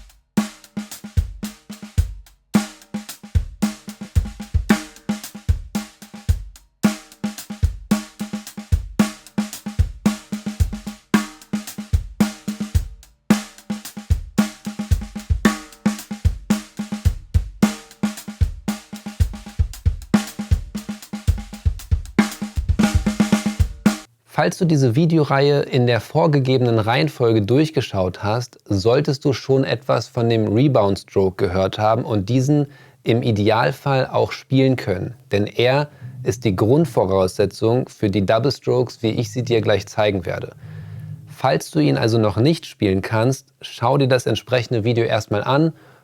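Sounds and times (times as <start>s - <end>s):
bass drum: 0.0s - 24.1s, 35.9s - 37.0s, 39.1s - 41.4s
cymbals: 0.0s - 24.1s
snare drum: 0.0s - 24.1s.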